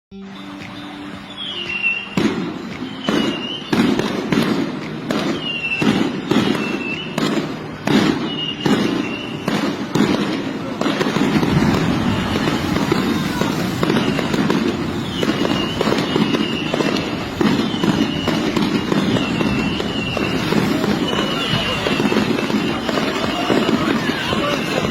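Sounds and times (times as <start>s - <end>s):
loud bangs and cracks: 2.2s - 24.9s
steady rumbling noise: 10.4s - 15.8s.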